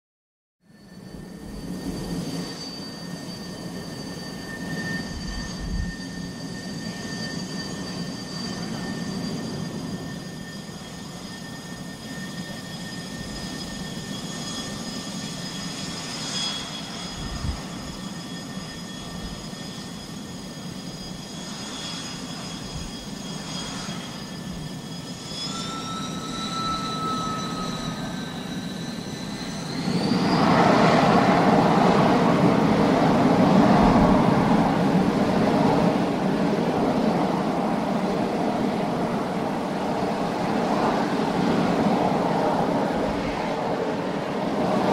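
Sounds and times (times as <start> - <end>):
jet engine roar: 0.8 - 44.9
jet engines whining: 0.8 - 44.9.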